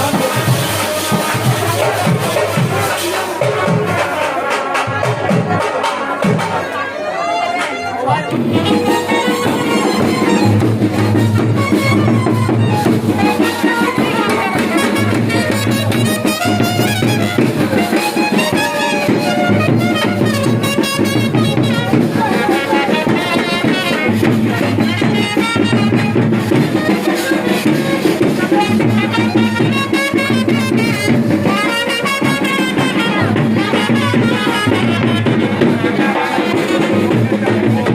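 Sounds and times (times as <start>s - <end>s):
music with brass and drums: 0.0s - 37.9s.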